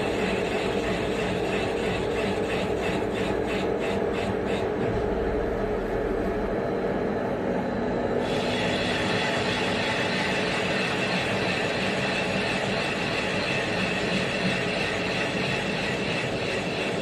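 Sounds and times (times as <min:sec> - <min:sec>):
milling machine cutting: 0:00.0 - 0:05.8, 0:08.2 - 0:17.0
rhythmic pulsing: 0:08.2 - 0:17.0.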